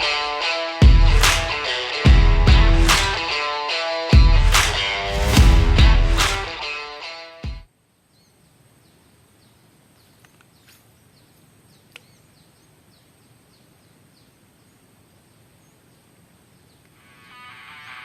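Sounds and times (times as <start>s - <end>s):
guitar music: 0.0s - 7.6s
bird chirping: 8.1s - 17.4s.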